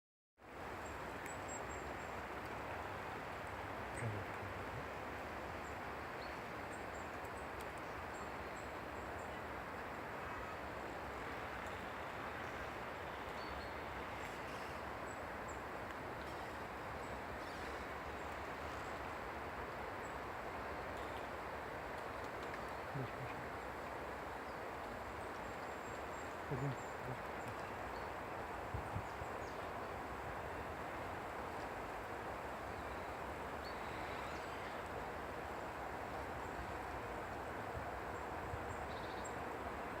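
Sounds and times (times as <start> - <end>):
wind rushing through pine trees: 0.4 - 40.0
faint bird chirps: 25.3 - 28.1.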